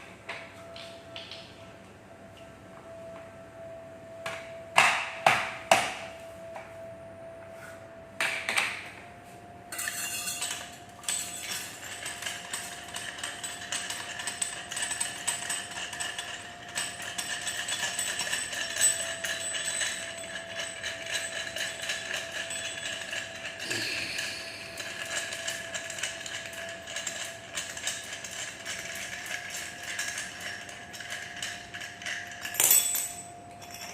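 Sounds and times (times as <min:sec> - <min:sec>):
faint steady hum: 0:00.0 - 0:12.6.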